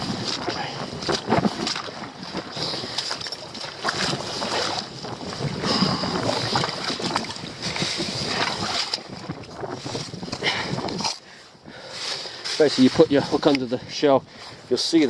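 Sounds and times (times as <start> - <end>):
sea water sloshing on rocks: 0.0 - 11.2
wind gusting over microphone: 0.0 - 15.0.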